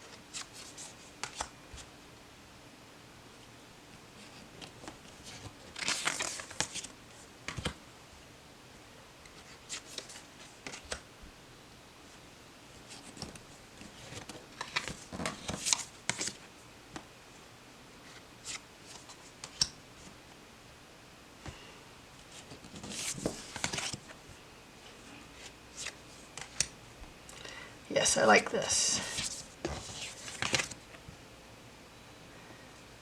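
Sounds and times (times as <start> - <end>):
cards rustling and sliding: 0.1 - 1.9, 4.2 - 7.8, 9.3 - 11.0, 12.8 - 16.4, 18.0 - 19.8, 22.2 - 24.2, 25.2 - 26.7, 29.0 - 31.0.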